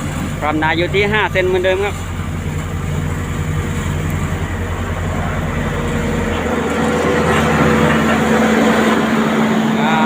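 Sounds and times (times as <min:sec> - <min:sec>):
diesel engine rumbling: 0:00.0 - 0:10.0
steady machine hum: 0:00.0 - 0:10.0.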